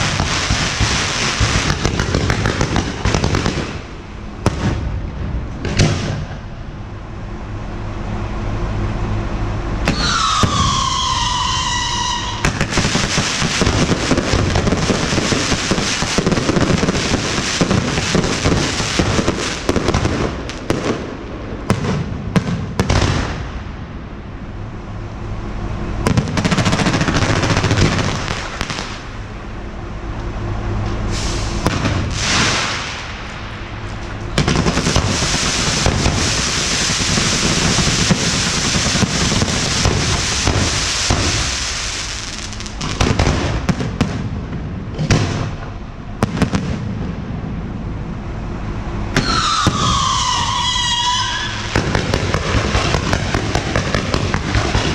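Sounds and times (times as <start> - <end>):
fireworks hissing: 0.0 - 4.8, 9.8 - 23.5, 26.2 - 29.4, 30.9 - 44.2, 49.1 - 54.9
firework bangs and crackling: 0.0 - 6.8, 9.8 - 24.4, 26.0 - 29.6, 30.8 - 47.8, 49.1 - 54.9.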